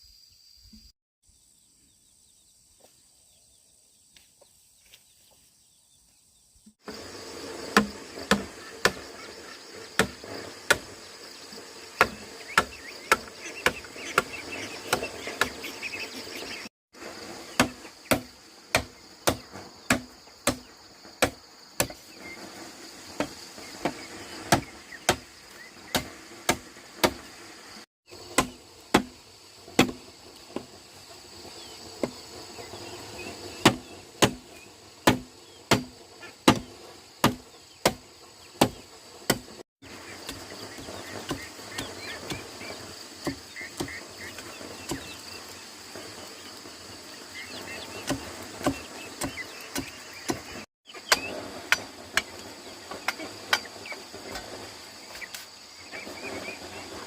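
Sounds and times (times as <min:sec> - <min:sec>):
insects humming: 0:00.0 - 0:57.0
sharp chopping strikes: 0:07.7 - 0:09.1, 0:10.0 - 0:11.0, 0:12.0 - 0:15.6, 0:17.5 - 0:22.1, 0:23.2 - 0:25.3, 0:25.9 - 0:27.3, 0:28.3 - 0:29.2, 0:29.8 - 0:30.7, 0:33.6 - 0:38.0, 0:38.6 - 0:39.6, 0:44.8 - 0:45.2, 0:48.0 - 0:52.3.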